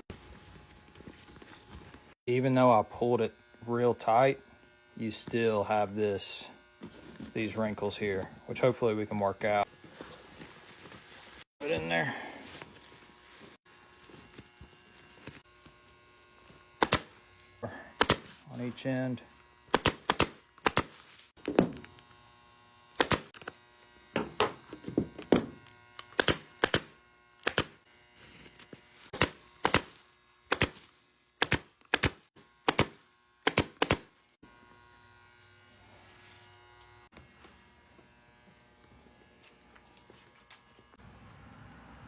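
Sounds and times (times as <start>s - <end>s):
staple gun firing: 16.8s - 17.1s, 18.0s - 18.3s, 19.7s - 20.9s, 23.0s - 23.4s, 26.0s - 27.8s, 29.2s - 29.9s, 30.5s - 30.8s, 31.4s - 34.1s.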